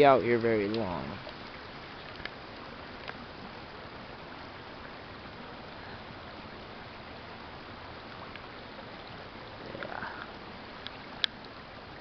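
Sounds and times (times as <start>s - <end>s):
rain falling on a pond: 0.0s - 12.0s
faint ticks: 0.3s - 3.2s, 8.2s - 8.5s, 9.7s - 11.6s.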